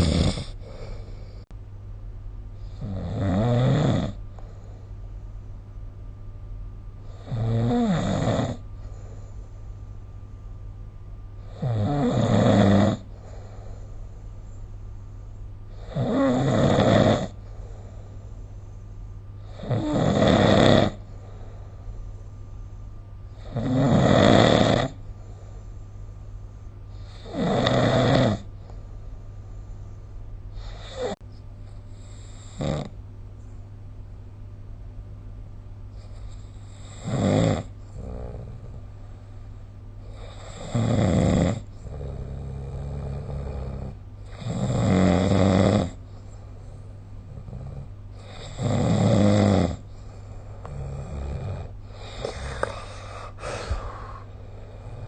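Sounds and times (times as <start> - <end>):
person snoring: 0.0 - 1.4, 2.6 - 4.6, 7.0 - 8.6, 11.4 - 13.7, 15.7 - 18.0, 19.4 - 21.1, 23.4 - 25.0, 27.0 - 28.5, 30.6 - 31.2, 32.0 - 32.9, 36.0 - 38.7, 40.1 - 46.0, 47.2 - 55.0
steady low hum: 0.0 - 55.0.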